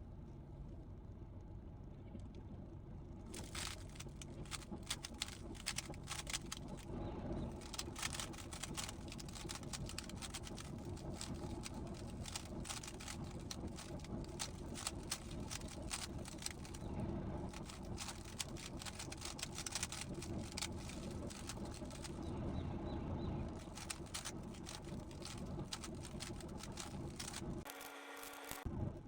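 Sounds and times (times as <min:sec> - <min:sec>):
low background hum: 0:00.0 - 0:29.0
puzzle cube layers clicking: 0:03.4 - 0:06.8, 0:07.6 - 0:16.8, 0:17.5 - 0:22.2, 0:23.6 - 0:27.5.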